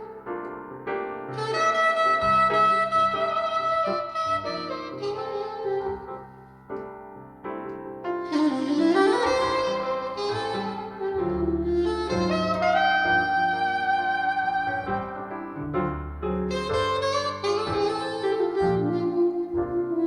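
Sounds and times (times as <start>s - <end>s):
soprano saxophone melody: 0.0s - 7.0s, 8.1s - 20.0s
piano chords: 0.0s - 20.0s
bass notes: 8.3s - 20.0s.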